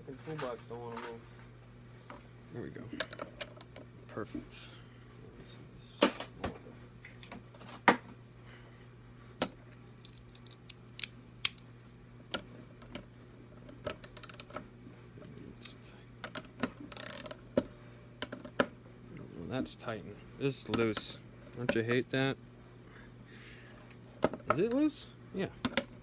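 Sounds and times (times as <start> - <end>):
steady low hum: 0.0 - 26.0
small metal parts clicking: 10.0 - 11.6, 14.0 - 14.6.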